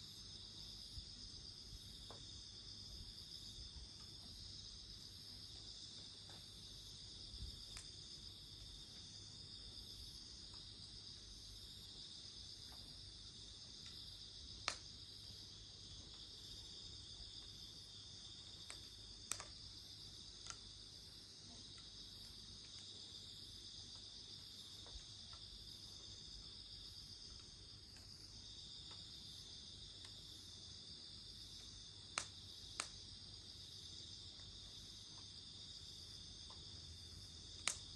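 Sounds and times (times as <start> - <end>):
crickets chirring: 0.0 - 37.9
campfire crackling: 5.5 - 9.2, 9.8 - 35.3, 37.3 - 37.9.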